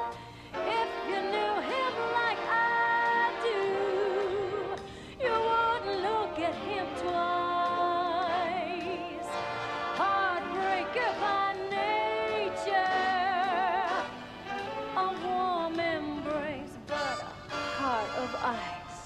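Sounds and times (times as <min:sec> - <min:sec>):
soundtrack music with singing: 0:00.0 - 0:19.0.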